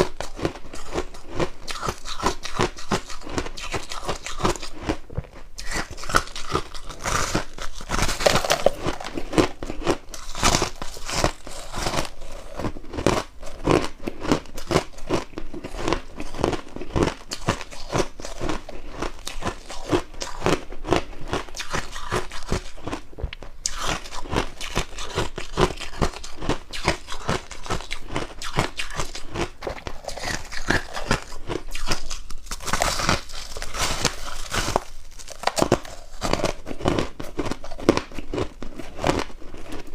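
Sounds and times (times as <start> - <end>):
frost crunching while chewed: 0.0 - 39.9.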